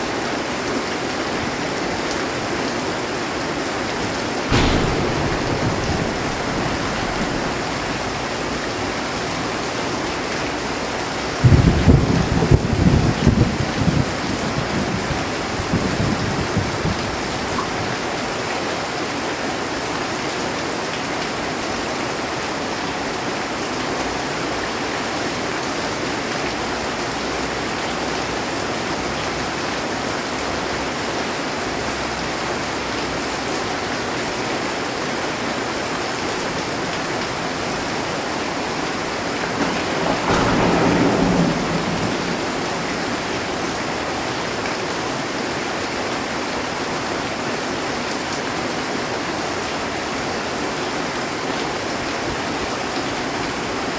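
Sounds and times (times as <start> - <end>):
heavy rain drumming on metal roof: 0.0 - 53.9
thunder roll: 4.2 - 17.9, 36.5 - 45.9.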